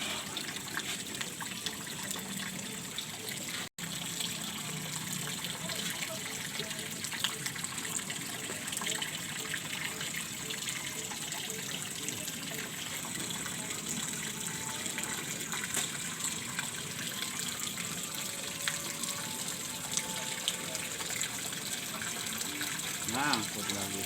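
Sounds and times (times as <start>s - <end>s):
stream water rushing: 13.3s - 24.0s.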